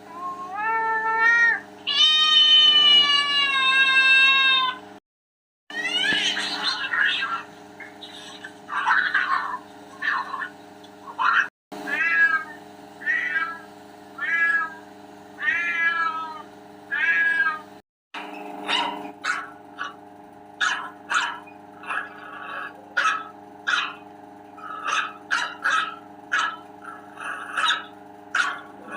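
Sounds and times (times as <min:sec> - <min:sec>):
cat meowing: 0:00.1 - 0:04.8, 0:11.9 - 0:13.6, 0:14.2 - 0:14.8, 0:15.4 - 0:17.6
steady low hum: 0:05.8 - 0:28.9.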